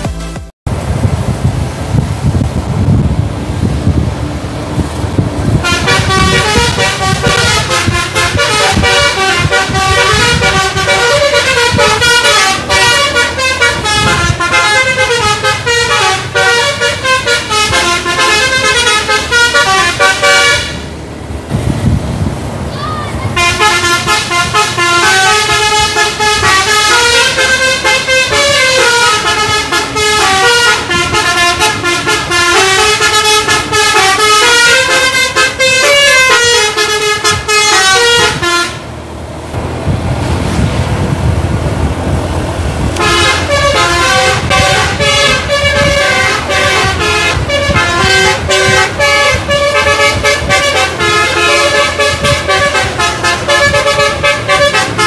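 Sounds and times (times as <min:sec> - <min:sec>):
multi-tone bus air horn: 0:05.5 - 0:21.0, 0:22.8 - 0:39.0, 0:42.9 - 0:55.0.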